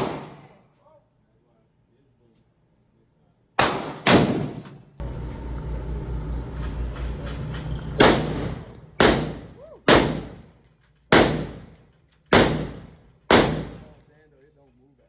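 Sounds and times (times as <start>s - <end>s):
gunshots with echo: 7.9s - 10.4s, 12.3s - 13.8s.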